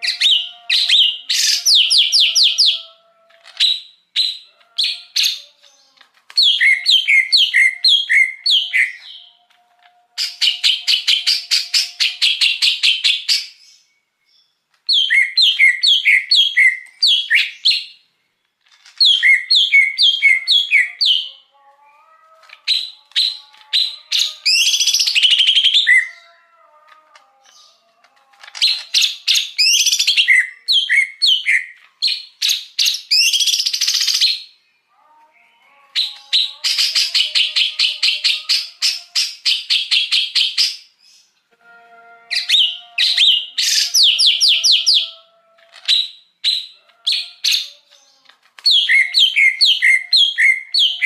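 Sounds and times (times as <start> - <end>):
bird singing trills and whistles: 3.5 - 9.4, 10.2 - 18.0, 19.0 - 21.4, 22.6 - 26.3, 28.6 - 34.6, 42.3 - 45.1, 45.8 - 51.0.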